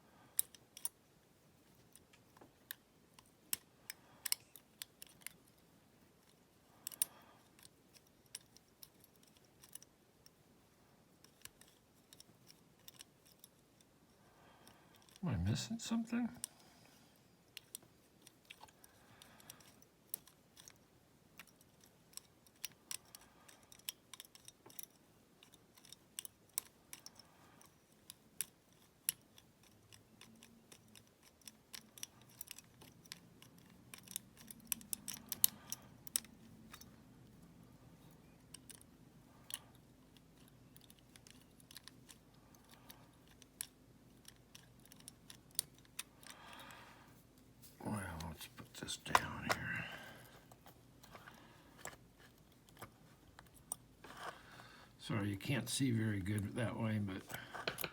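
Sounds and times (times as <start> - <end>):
pick wire clicking in padlock: 0.3 - 1.0, 1.9 - 5.4, 6.2 - 9.9, 11.2 - 13.9, 14.6 - 15.2, 17.5 - 37.4, 38.0 - 47.2.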